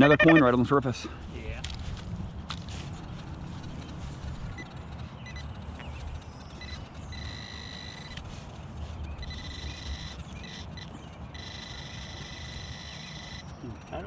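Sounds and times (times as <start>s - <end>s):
metal detector high tone: 0.0s - 0.5s, 6.6s - 8.2s, 9.2s - 14.0s.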